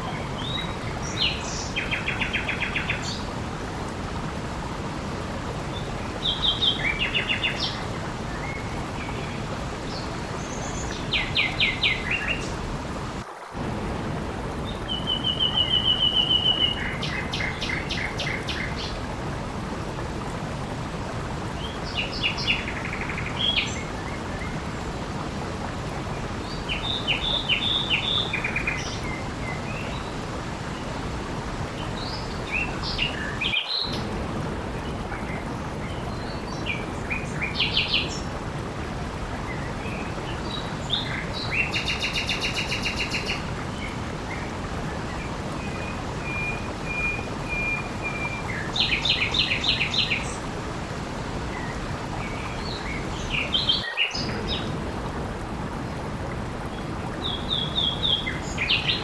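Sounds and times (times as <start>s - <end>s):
songbird singing: 0.0s - 3.4s, 5.7s - 12.7s, 14.6s - 19.0s, 26.2s - 30.2s, 39.5s - 50.5s, 56.7s - 59.0s
water rushing: 0.0s - 59.0s.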